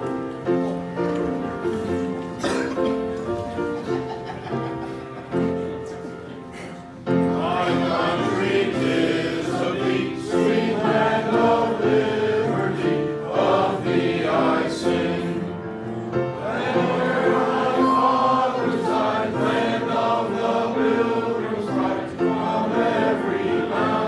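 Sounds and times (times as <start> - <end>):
choir singing: 7.1 - 24.0.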